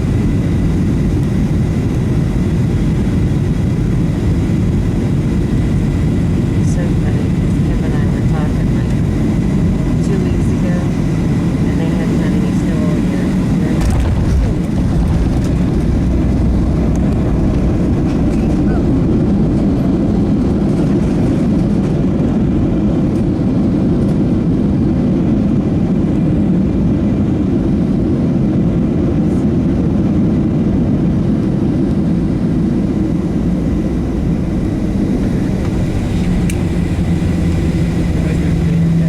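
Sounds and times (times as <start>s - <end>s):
airplane cabin engine rumble: 0.0s - 39.0s
steady low hum: 0.0s - 39.0s.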